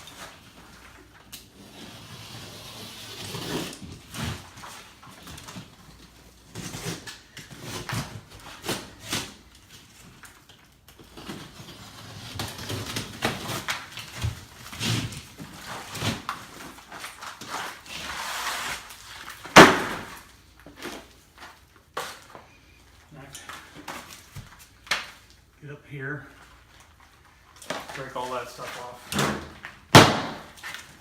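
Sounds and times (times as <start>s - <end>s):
knocks and cracks of wall demolition: 19.2s - 21.0s, 29.0s - 30.9s.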